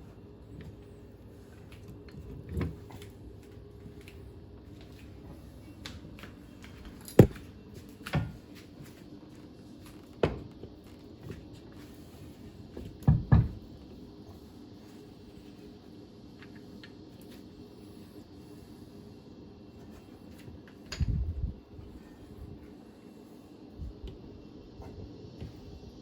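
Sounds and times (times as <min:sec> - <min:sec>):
knocks and clunks of tools: 0:07.2 - 0:07.4.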